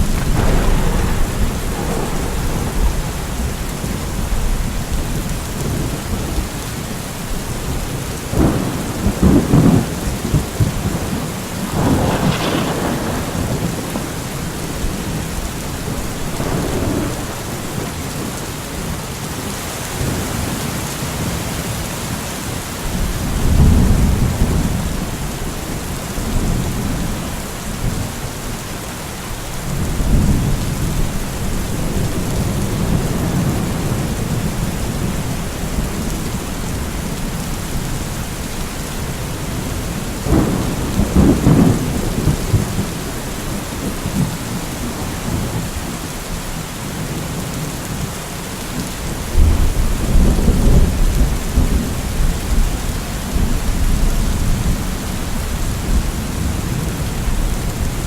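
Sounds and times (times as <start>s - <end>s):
thunder rumbling: 0.0s - 19.0s, 29.5s - 46.0s, 49.3s - 58.0s
heavy rain hissing: 0.0s - 58.0s.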